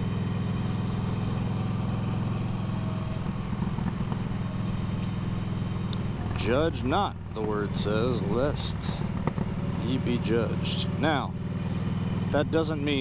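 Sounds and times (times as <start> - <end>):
motorcycle engine running: 0.0 - 13.0.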